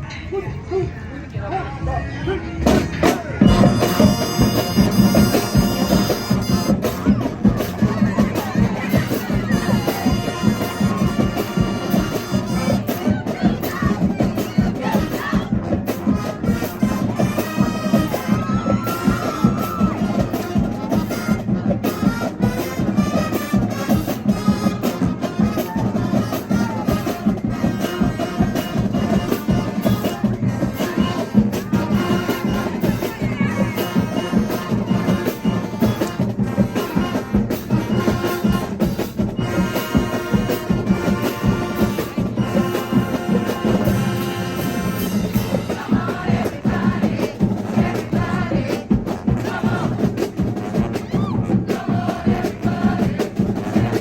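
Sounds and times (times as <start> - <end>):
drum-line beat: 2.6 - 54.0
brass horns playing melody: 3.5 - 46.3.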